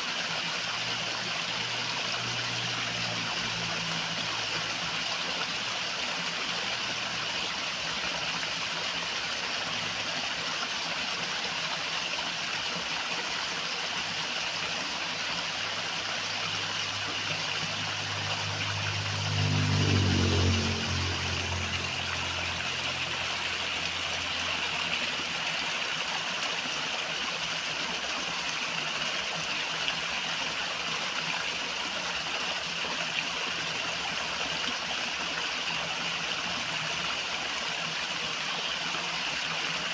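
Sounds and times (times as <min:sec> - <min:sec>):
river water rushing: 0:14.0 - 0:35.3
low engine hum: 0:15.0 - 0:27.6.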